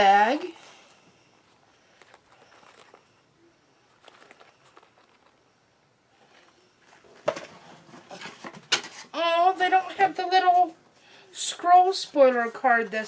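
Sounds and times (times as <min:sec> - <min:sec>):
packaging rustling: 0:01.4 - 0:03.2, 0:03.9 - 0:05.4.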